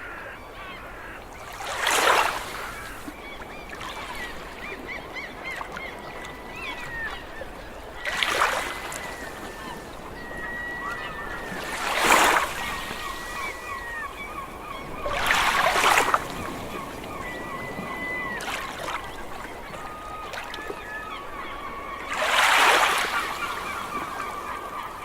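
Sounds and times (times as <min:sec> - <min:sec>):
gulls calling: 0:00.0 - 0:25.0
waves washing in: 0:08.0 - 0:14.0, 0:14.7 - 0:20.6.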